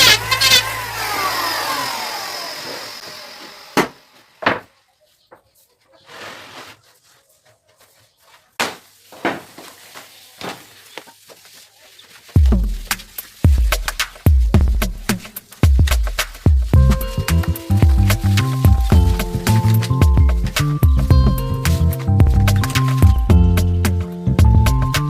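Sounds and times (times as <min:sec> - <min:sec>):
background music: 0:14.3 - 0:25.0.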